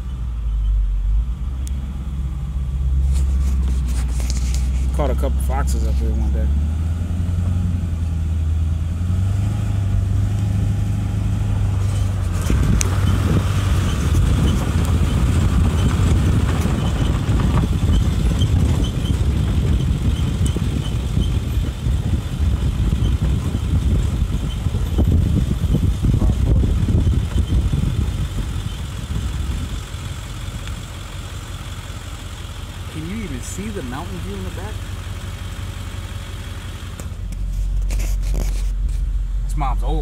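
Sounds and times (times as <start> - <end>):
truck engine and tyre rumble: 0.0 - 40.0
knocks and rattles: 11.8 - 28.6.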